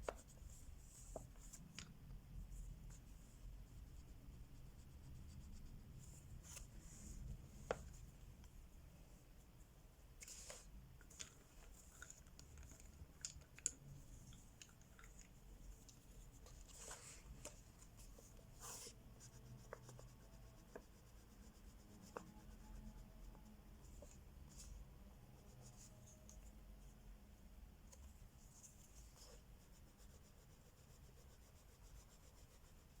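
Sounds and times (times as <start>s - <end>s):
small clicks and taps: 11.0s - 16.0s.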